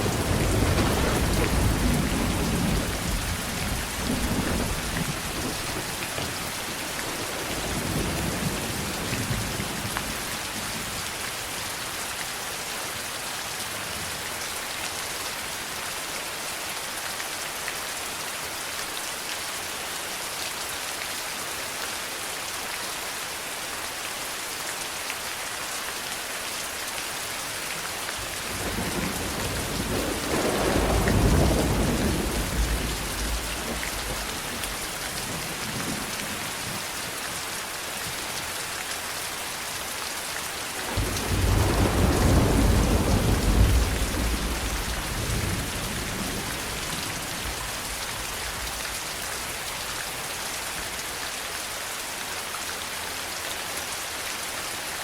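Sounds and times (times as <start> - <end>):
thunder rumbling: 0.0 - 6.4, 28.2 - 36.8, 40.8 - 48.9
steady rain: 0.0 - 55.0.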